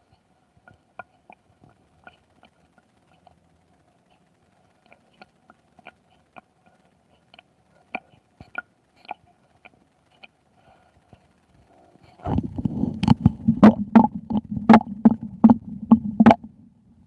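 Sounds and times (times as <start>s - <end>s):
stomach gurgling pops: 12.2s - 16.6s.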